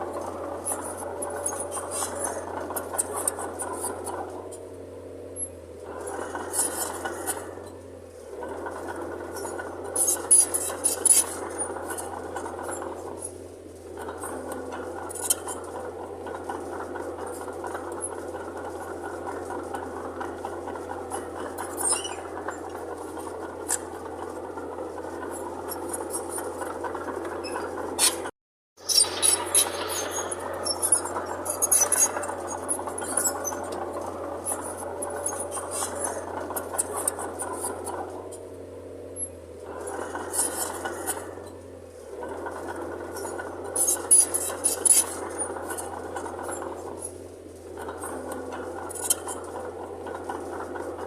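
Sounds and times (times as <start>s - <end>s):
bulldozer engine drone: 0.0s - 51.0s
metallic clatter: 14.0s - 38.1s.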